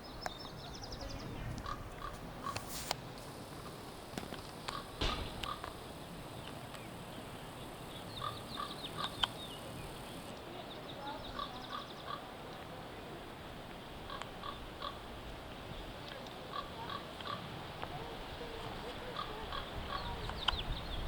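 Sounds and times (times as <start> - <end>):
sharp clicks: 4.2 - 6.9, 9.0 - 9.4.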